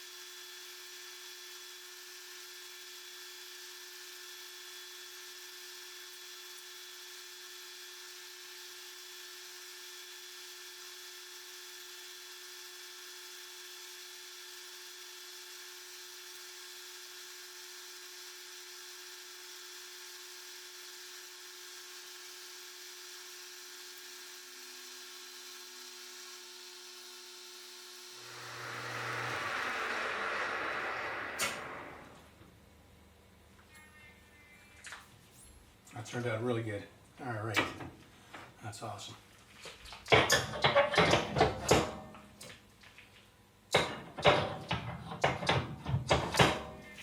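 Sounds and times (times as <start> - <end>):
metal lathe motor whine: 22.7 - 32.4
harsh cutting sound: 27.1 - 32.4.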